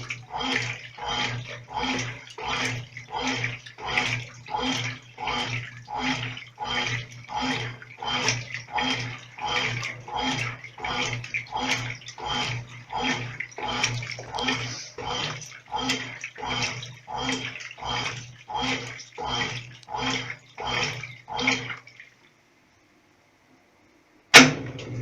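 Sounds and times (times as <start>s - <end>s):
agitator motor humming: 0.0s - 22.1s
water sloshing: 0.0s - 22.4s.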